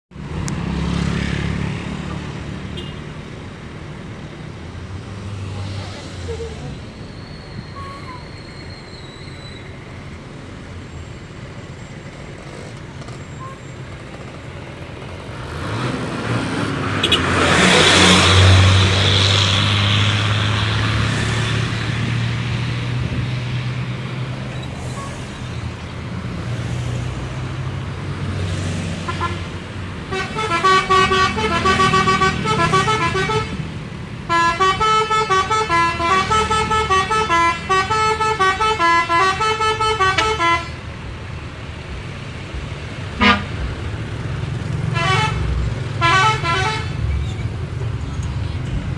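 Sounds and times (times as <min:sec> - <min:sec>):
large vehicle engine hum: 0:00.1 - 0:48.9
melodic bus horn: 0:29.0 - 0:29.5, 0:30.1 - 0:33.7, 0:34.3 - 0:40.8, 0:43.2 - 0:43.6, 0:44.9 - 0:47.0.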